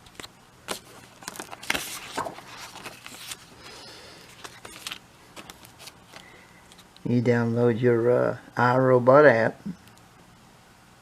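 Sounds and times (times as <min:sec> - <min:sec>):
packaging and papers rustling: 0:00.0 - 0:06.9
faint electrical hum: 0:00.0 - 0:11.0.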